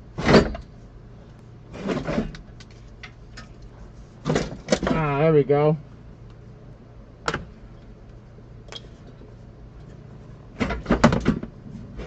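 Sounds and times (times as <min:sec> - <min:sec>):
car interior parts clattering: 0:04.2 - 0:05.2, 0:10.5 - 0:11.6.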